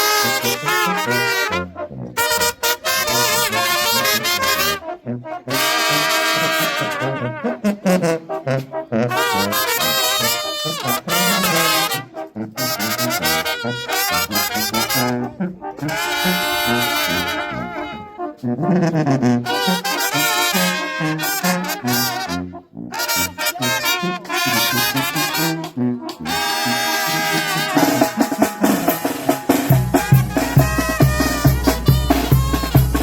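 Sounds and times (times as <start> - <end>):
brass band playing: 0.0 - 33.0
trumpet melody: 0.0 - 33.0
tuba bass: 0.0 - 33.0
heavy bass and drum beat: 27.7 - 33.0.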